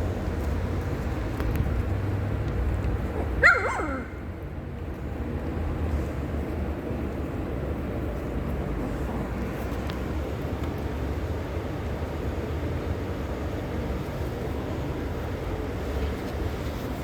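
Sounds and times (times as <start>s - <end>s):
puppy yelp: 3.1s - 4.2s.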